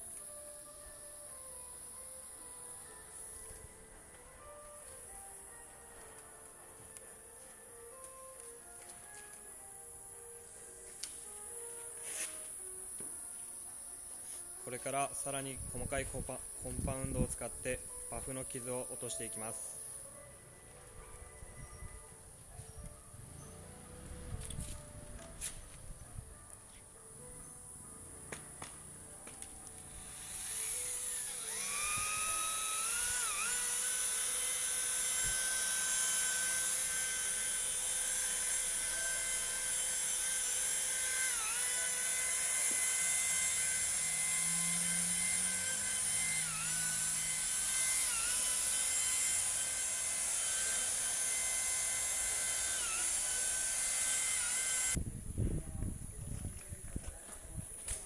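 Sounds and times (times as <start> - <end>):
rotary polisher whining: 28.3 - 55.0.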